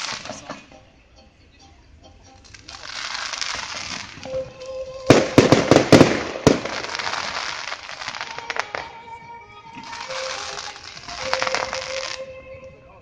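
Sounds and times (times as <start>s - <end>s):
fireworks crackling: 0.0s - 0.7s, 2.4s - 12.3s
loud firework bangs: 2.6s - 4.4s, 5.1s - 8.9s.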